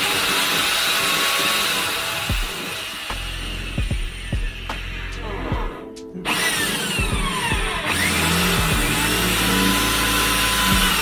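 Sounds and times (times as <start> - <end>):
electric drill boring metal: 0.0 - 11.0
background music: 2.2 - 11.0.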